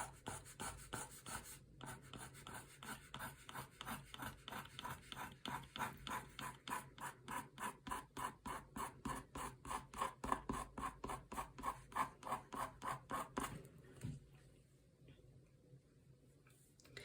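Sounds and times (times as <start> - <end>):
pen scratching on paper: 0.0 - 13.5.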